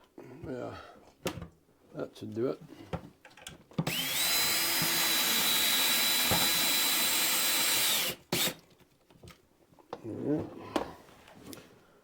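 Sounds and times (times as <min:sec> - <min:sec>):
electric drill whining: 0:03.9 - 0:08.6.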